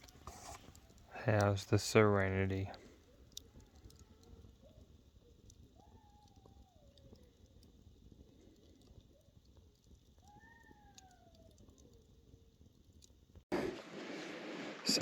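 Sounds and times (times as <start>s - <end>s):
faint bird calls gliding downward: 3.0s - 7.9s, 8.7s - 12.6s.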